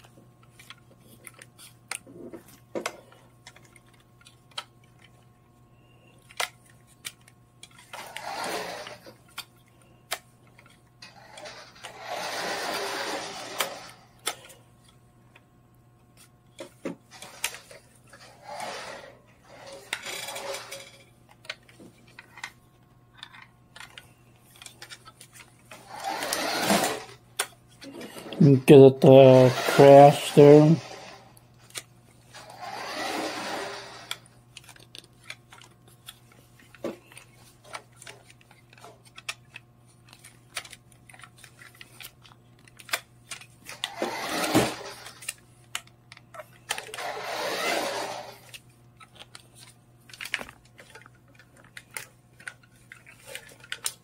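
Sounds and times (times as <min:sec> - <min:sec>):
toy car electric motor whirring: 0:07.9 - 0:09.2, 0:11.0 - 0:14.4, 0:17.1 - 0:21.0, 0:25.7 - 0:27.2, 0:29.3 - 0:31.4, 0:32.3 - 0:34.3, 0:43.7 - 0:45.4, 0:46.3 - 0:48.6.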